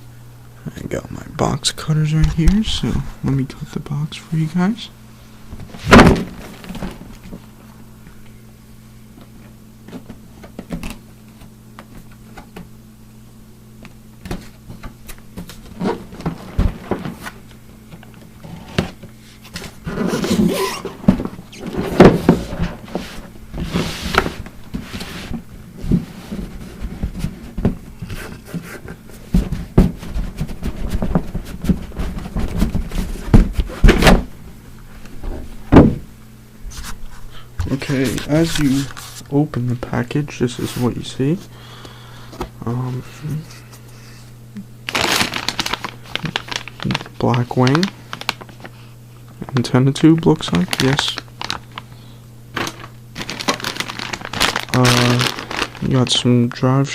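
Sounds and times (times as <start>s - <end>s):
steady low hum: 0.0s - 56.9s
packaging scrapes taps and rustles: 52.6s - 56.0s.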